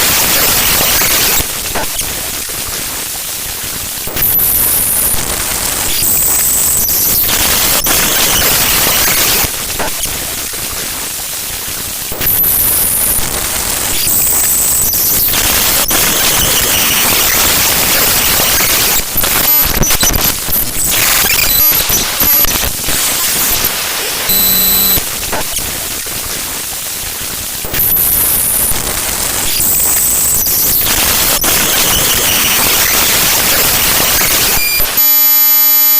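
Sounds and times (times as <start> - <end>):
harsh hiss and static: 0.0 - 35.9
buzzy steady tone: 12.2 - 26.2.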